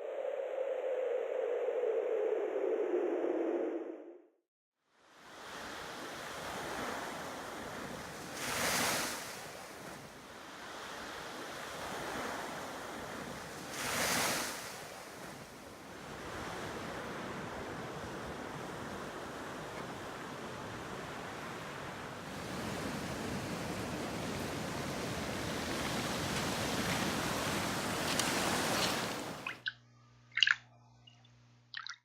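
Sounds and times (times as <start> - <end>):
waves breaking: 5.2 - 29.7, 30.4 - 30.6
waves washing: 5.2 - 29.7, 30.4 - 30.6.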